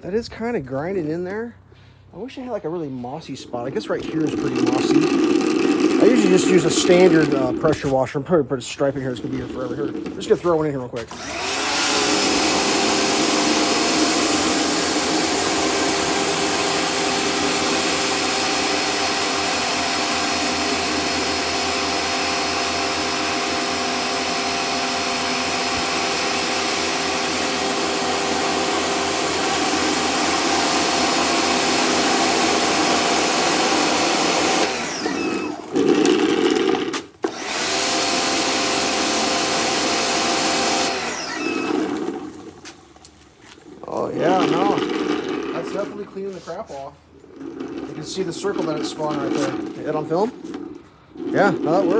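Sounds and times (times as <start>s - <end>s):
pressure washer motor whine: 3.6s - 7.9s, 9.1s - 46.6s, 47.3s - 51.9s
water jet hissing on concrete: 3.8s - 7.8s.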